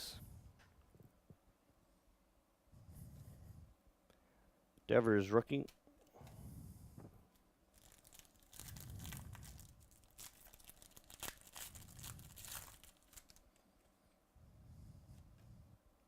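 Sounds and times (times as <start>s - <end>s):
cards rustling and crinkling: 7.7s - 13.7s.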